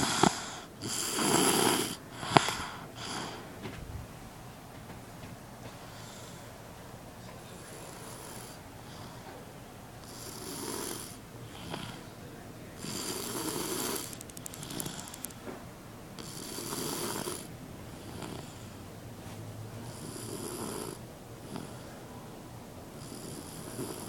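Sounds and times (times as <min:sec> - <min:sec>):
child snoring softly: 0:00.0 - 0:03.5, 0:07.5 - 0:09.4, 0:10.0 - 0:12.1, 0:12.8 - 0:15.4, 0:16.2 - 0:18.9, 0:19.8 - 0:22.0, 0:23.0 - 0:24.0.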